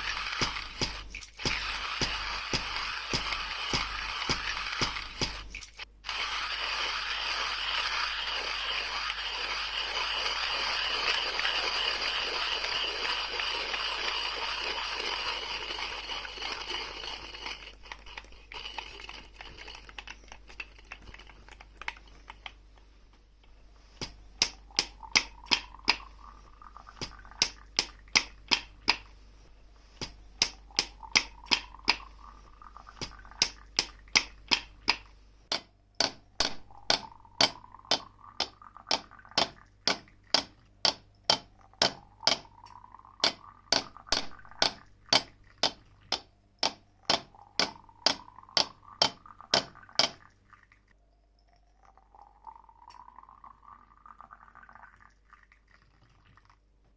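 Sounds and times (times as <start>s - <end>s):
rhythm of sharp clicks: 0.0s - 5.8s.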